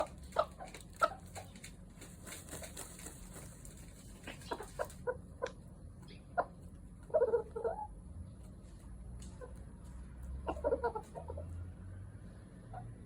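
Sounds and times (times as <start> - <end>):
rooster clucking: 0.0 - 8.0, 9.3 - 11.7.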